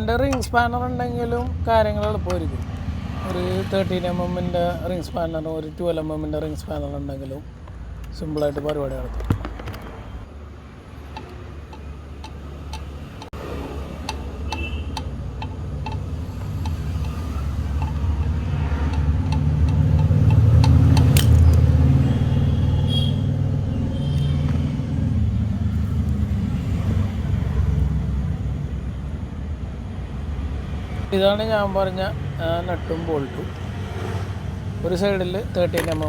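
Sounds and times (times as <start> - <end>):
light metallic clicks: 14.0 - 21.8
motor vehicle passing by: 15.6 - 28.8, 33.6 - 34.8.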